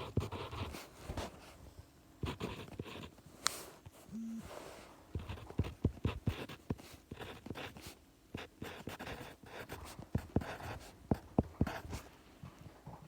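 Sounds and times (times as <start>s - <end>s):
pen scratching on paper: 0.0s - 0.9s, 2.2s - 3.2s, 5.1s - 12.0s.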